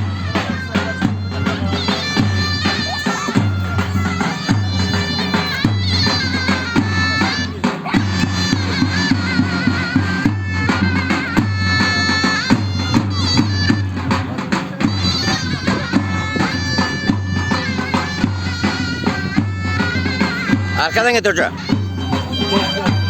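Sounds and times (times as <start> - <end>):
double-reed pipe melody: 0.0 - 23.0
heavy drum beats: 0.0 - 23.0.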